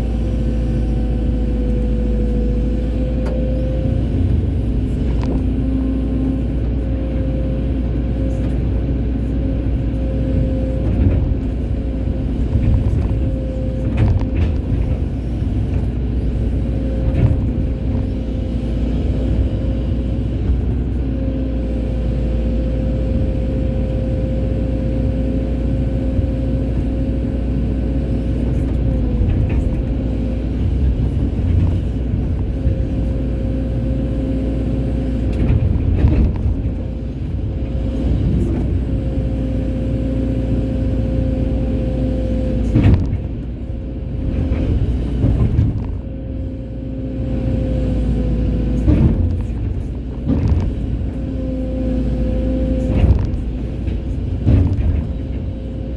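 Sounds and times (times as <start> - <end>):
excavator diesel engine whining: 0.0 - 55.9.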